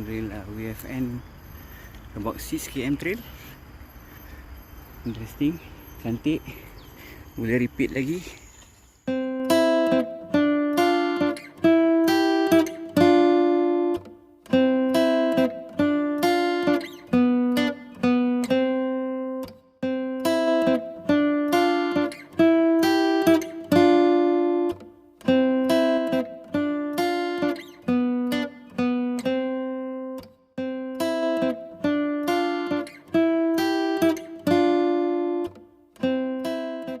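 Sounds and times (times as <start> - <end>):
acoustic guitar chords plucked: 8.5 - 37.0.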